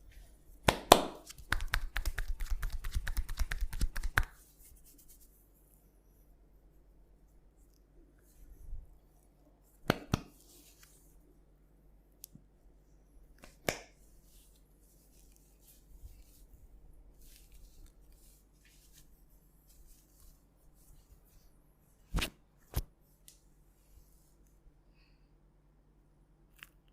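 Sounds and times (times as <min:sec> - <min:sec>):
hands rubbing skin and hair: 0:00.2 - 0:05.8, 0:09.6 - 0:11.1, 0:13.4 - 0:23.4
sharp finger snaps: 0:00.6 - 0:04.3, 0:09.8 - 0:10.3.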